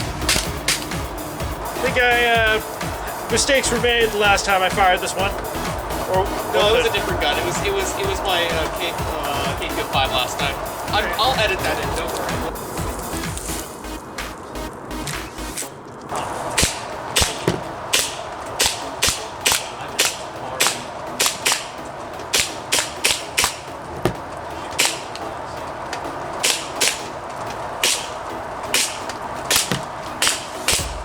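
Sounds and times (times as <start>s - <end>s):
airsoft gun shots: 16.6s - 21.7s, 22.3s - 23.6s, 26.4s - 27.1s, 27.8s - 31.0s.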